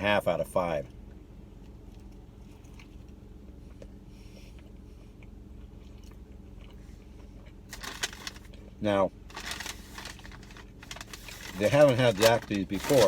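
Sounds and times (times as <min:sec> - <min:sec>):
steady low hum: 0:00.0 - 0:13.0
chewing crunchy food: 0:01.6 - 0:08.7.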